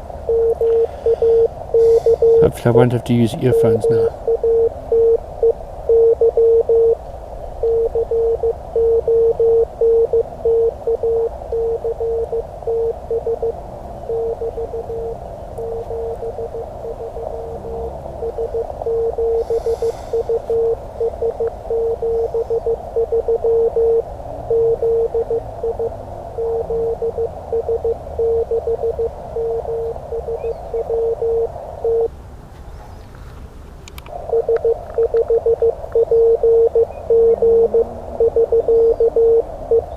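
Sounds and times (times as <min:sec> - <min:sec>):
radio receiver hiss: 0:00.0 - 0:32.1
morse code tone: 0:00.2 - 0:07.0, 0:07.6 - 0:32.1, 0:34.1 - 0:39.9.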